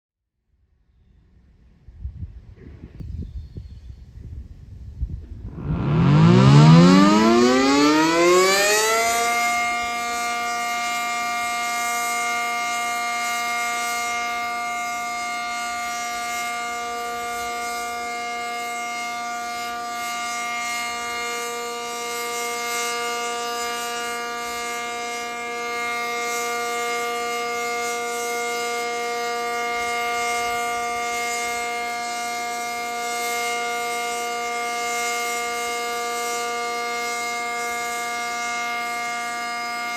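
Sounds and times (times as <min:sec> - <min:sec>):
warning siren steady tone: 0:05.4 - 0:39.9.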